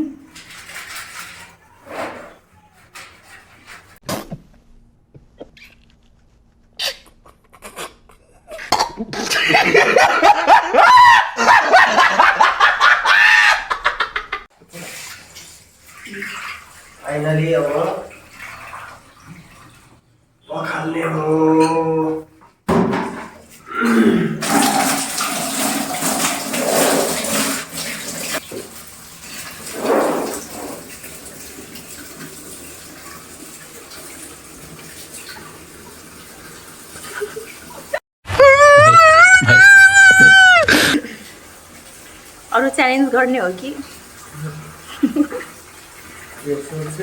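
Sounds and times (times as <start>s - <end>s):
water splashing and running: 14.6s - 20.0s, 24.4s - 38.0s, 39.5s - 47.0s
high-pitched wavering cries: 38.3s - 40.7s.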